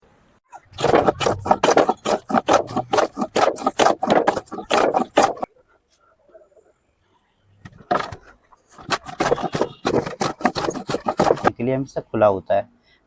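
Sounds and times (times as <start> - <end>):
hand saw cutting wood: 0.8 - 5.5, 8.7 - 11.5.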